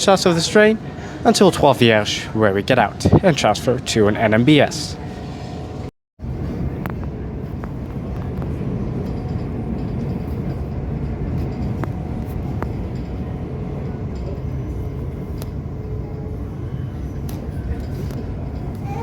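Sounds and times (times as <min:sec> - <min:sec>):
train rumbling inside carriage: 0:05.0 - 0:19.0.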